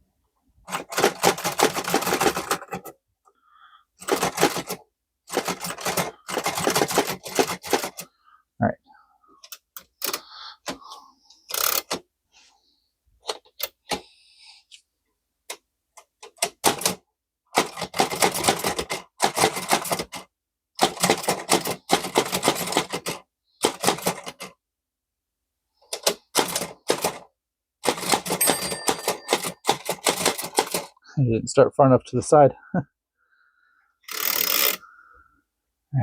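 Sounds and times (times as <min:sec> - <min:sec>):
typewriter keystrokes: 0:16.2 - 0:17.0.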